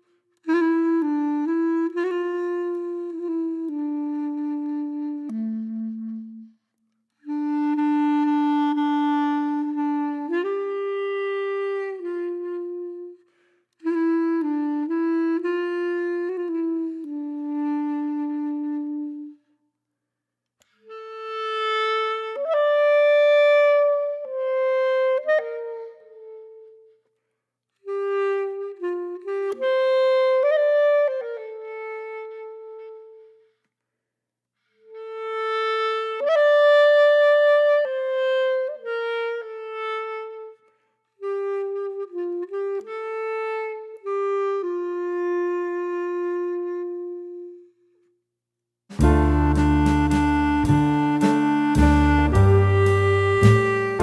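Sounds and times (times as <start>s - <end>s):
slow wind instrument melody: 0.0s - 19.6s, 20.6s - 27.2s, 27.8s - 33.6s, 34.6s - 48.1s, 48.9s - 54.0s.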